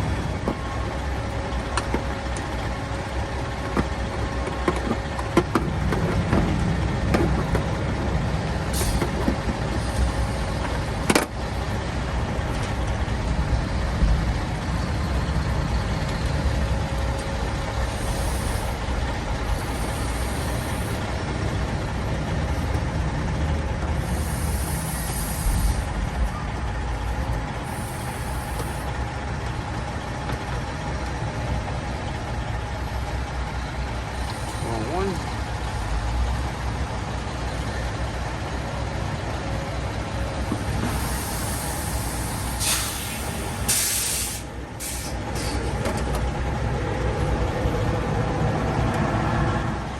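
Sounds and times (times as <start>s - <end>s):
diesel truck engine idling: 0.0s - 49.9s
air hissing: 8.6s - 10.6s, 17.7s - 21.1s, 24.0s - 26.0s, 27.6s - 28.9s, 40.5s - 45.8s.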